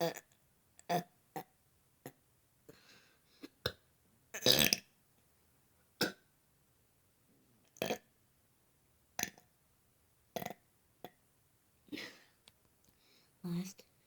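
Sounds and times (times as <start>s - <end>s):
person burping: 0.0s - 0.3s, 4.4s - 4.8s, 6.0s - 6.2s.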